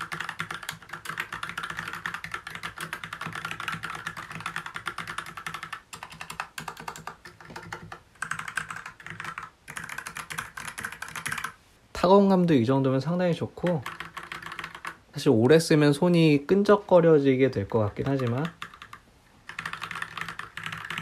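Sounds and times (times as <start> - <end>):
mechanical keyboard typing: 0.0 - 11.6, 13.6 - 15.0, 17.6 - 21.0.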